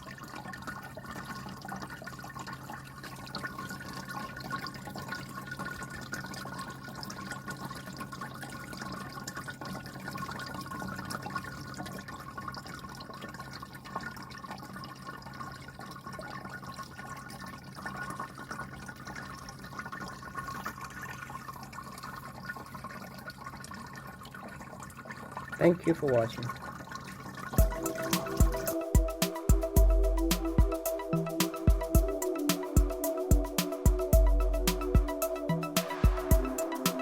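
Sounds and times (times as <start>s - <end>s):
water trickling and splashing: 0.0s - 37.0s
pump humming: 27.5s - 37.0s.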